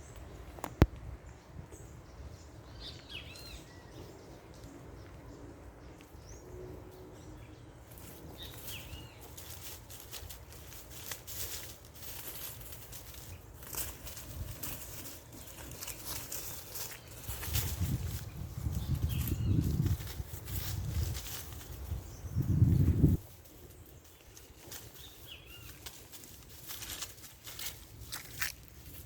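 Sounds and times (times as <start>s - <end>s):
wind rumble: 8.4s - 25.1s.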